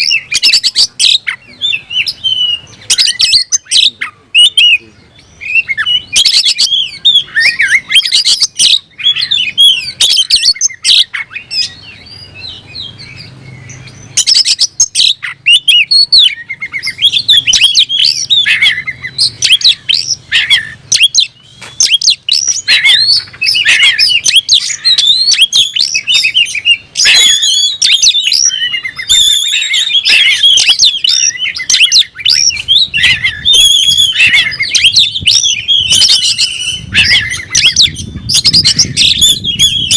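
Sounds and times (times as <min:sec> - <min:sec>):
bird singing whistles and chirps: 0:00.0 - 0:39.9.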